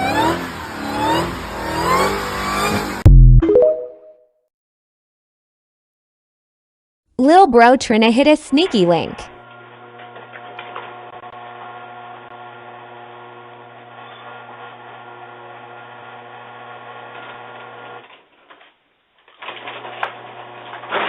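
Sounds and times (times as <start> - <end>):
machine hum with buzzy whir: 9.3 - 18.0.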